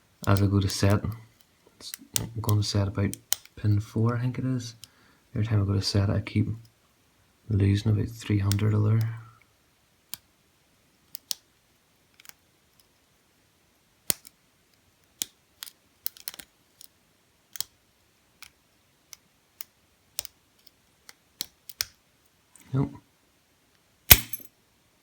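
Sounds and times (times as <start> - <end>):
lock pick clicking in padlock: 24.1 - 24.5.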